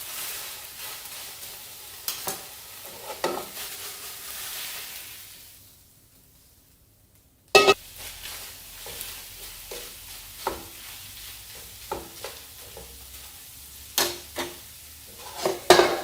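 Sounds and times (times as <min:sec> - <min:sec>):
meat sizzling in a skillet: 0:00.0 - 0:06.9, 0:07.5 - 0:16.0
utensil clacking against pan: 0:15.2 - 0:16.0.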